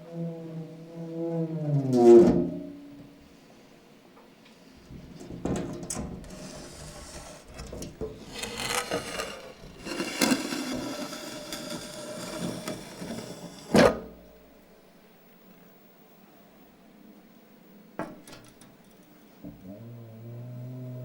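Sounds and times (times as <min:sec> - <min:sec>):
scraping and rubbing: 0:06.0 - 0:13.9.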